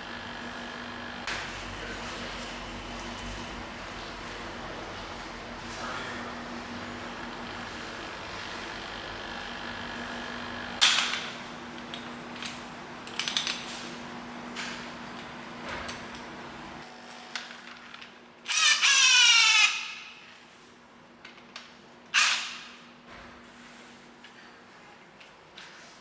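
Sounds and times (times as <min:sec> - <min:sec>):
power tool whine: 0:06.8 - 0:10.8.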